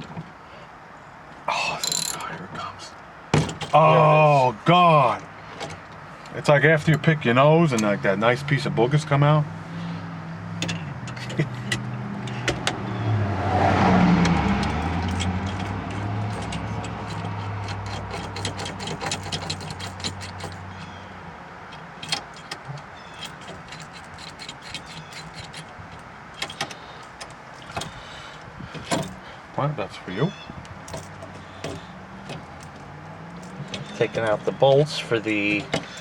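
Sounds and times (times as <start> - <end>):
vehicle engine hum: 0.0 - 36.0
hand tools clicking and tapping: 14.2 - 21.0, 21.7 - 29.2, 30.9 - 36.0.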